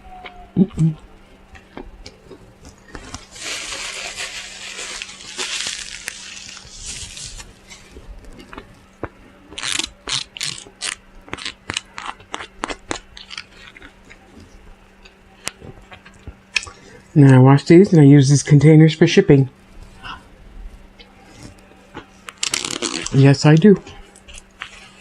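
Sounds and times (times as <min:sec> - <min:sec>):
food containers rustling: 0:02.6 - 0:08.8.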